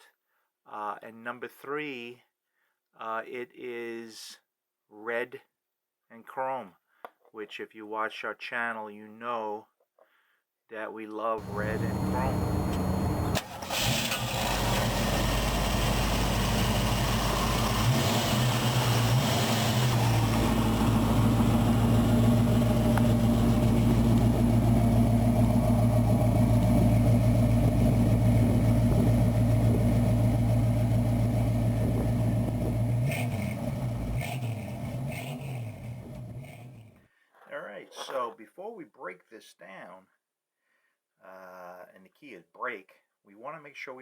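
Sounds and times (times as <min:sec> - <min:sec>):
motor humming steadily: 0:11.4 - 0:34.8.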